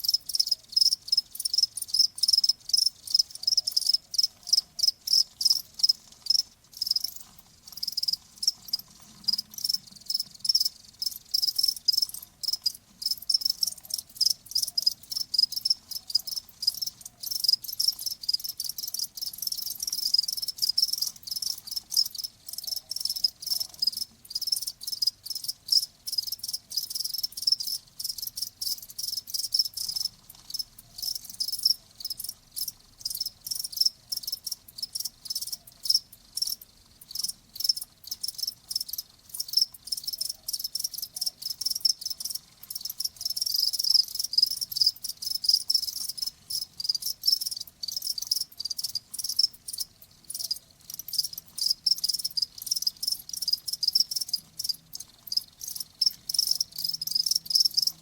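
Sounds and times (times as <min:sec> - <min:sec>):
crickets chirping: 0:00.0 - 0:58.0.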